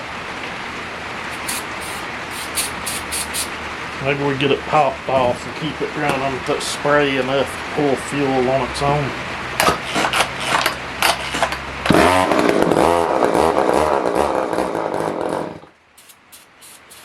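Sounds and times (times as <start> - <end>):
chainsaw engine running: 1.3 - 3.5, 11.0 - 17.0.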